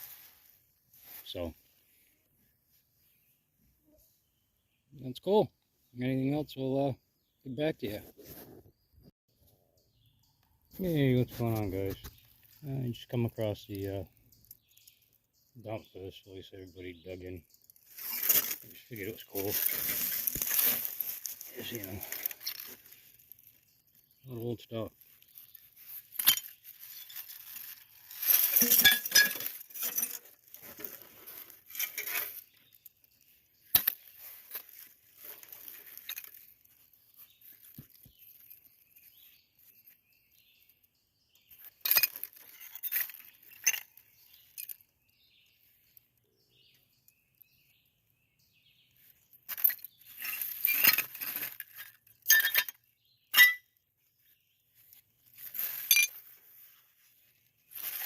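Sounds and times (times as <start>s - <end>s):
glass clinking and scraping: 25.3s - 32.6s, 41.8s - 44.8s, 49.5s - 53.7s, 55.4s - 56.4s.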